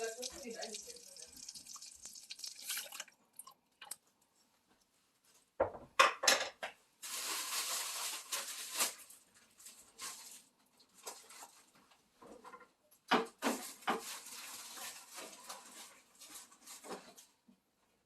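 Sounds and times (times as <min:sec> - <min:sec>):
dishes clinking and knocking: 0:05.6 - 0:06.8.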